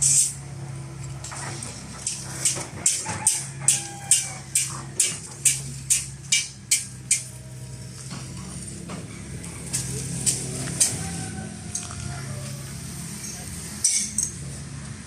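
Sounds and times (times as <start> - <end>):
low machine hum: 0.0 - 15.0
metal hitting metal: 2.0 - 7.4.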